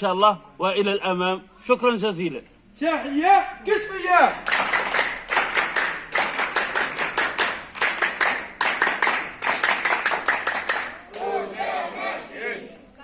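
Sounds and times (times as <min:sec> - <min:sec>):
group of people clapping: 0:04.3 - 0:11.4.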